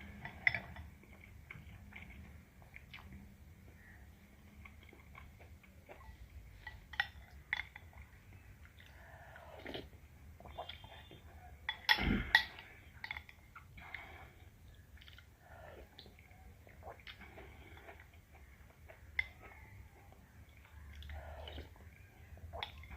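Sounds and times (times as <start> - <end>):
wet chewing: 0.0 - 22.9.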